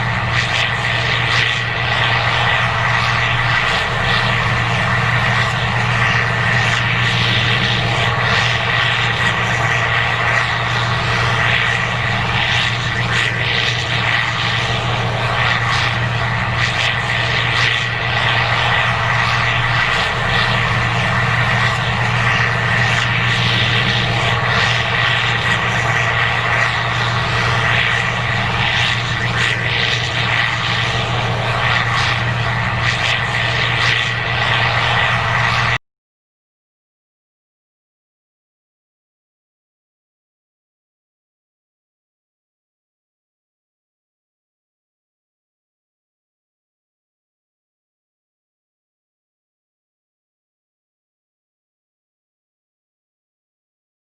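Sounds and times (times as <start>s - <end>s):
combine engine drone: 0.0s - 35.8s
high whine: 0.0s - 35.8s.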